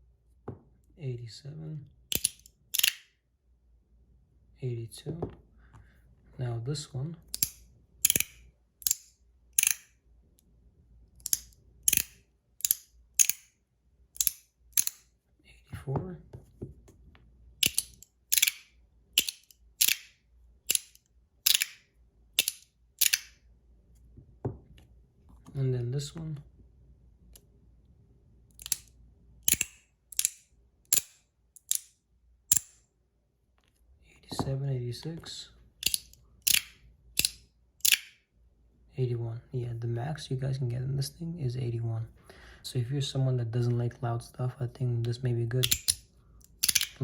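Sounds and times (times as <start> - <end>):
magnetic slider metal clicks: 2.1 - 3.0, 7.3 - 9.9
magnetic fidget slider clicking: 7.3 - 9.0.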